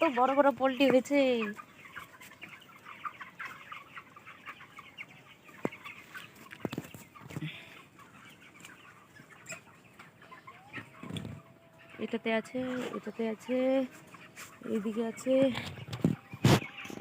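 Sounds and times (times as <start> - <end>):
chickens clucking and chirping: 0.0 - 17.0.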